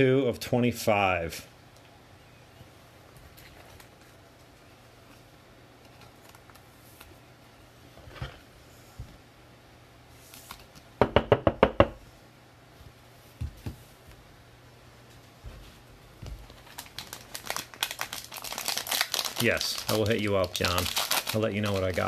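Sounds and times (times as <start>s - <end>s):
card packs crinkling: 16.4s - 22.0s.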